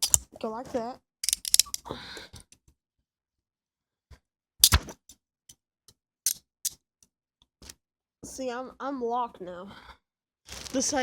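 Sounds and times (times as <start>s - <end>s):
handcuff ratchet clicks: 0.0s - 0.2s, 1.2s - 1.9s.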